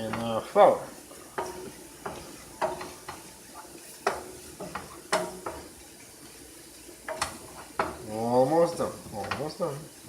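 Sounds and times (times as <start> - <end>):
faint sizzle: 0.0 - 10.0
utensil knocking against a pan: 1.4 - 3.3, 4.0 - 5.8, 7.0 - 8.0.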